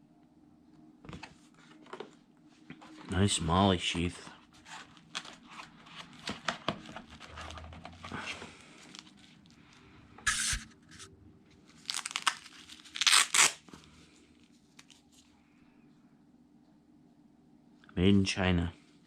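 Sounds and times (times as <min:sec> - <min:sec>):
packaging rustling: 0:04.6 - 0:09.6, 0:11.7 - 0:13.8
ripping sound: 0:10.3 - 0:11.1.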